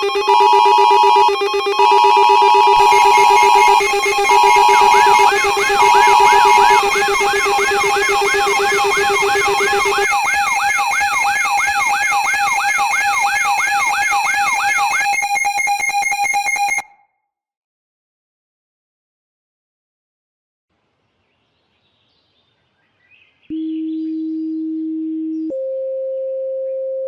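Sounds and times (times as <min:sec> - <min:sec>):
steady high electronic tone: 0:00.0 - 0:16.8
sweeping siren tone: 0:00.0 - 0:16.8
long electronic beeps: 0:00.0 - 0:16.9.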